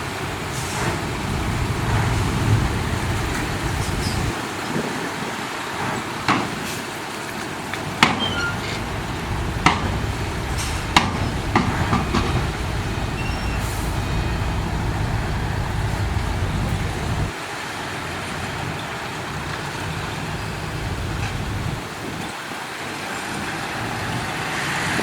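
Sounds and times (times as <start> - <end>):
truck engine running: 0.1 - 4.4, 8.2 - 17.3, 20.2 - 22.2
sharp metallic clanks: 8.0 - 17.3.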